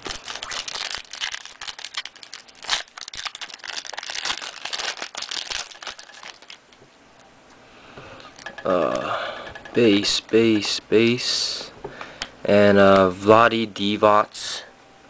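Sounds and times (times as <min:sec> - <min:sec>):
foil wrapper tearing and crinkling: 0:00.0 - 0:06.7.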